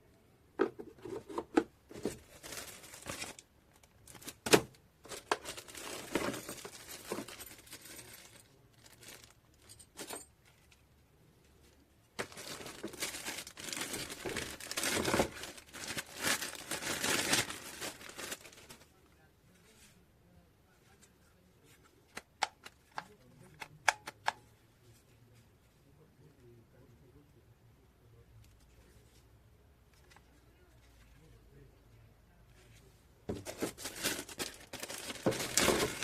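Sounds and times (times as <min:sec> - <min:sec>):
plastic and cardboard crinkling: 0:01.0 - 0:10.7, 0:12.2 - 0:19.0, 0:33.3 - 0:36.0.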